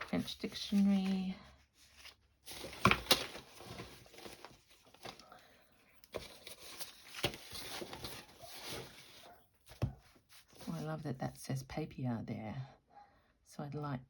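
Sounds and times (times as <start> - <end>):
paper rustling and crinkling: 0.0 - 10.9.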